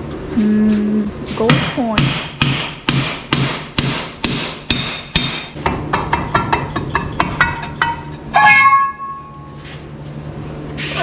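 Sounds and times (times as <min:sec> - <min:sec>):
hammer hitting metal drum: 0:01.4 - 0:09.2
loud ringing metal clang: 0:06.2 - 0:09.5.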